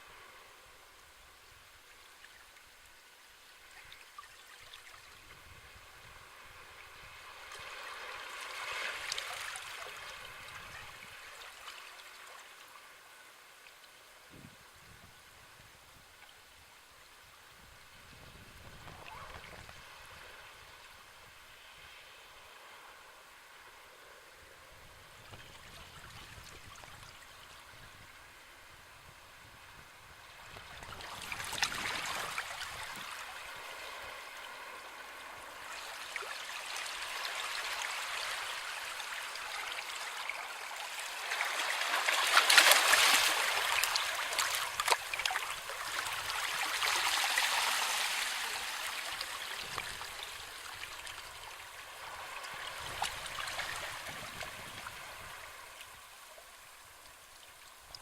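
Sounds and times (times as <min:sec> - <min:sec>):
sea waves washing onto shore: 0:29.4 - 0:56.8.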